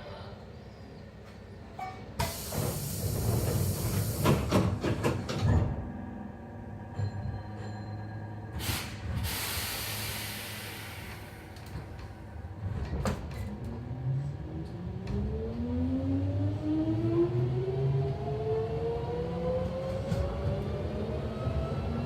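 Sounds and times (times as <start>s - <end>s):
train motors and wheels running: 0.9s - 22.0s
compressed air hiss: 8.6s - 11.6s.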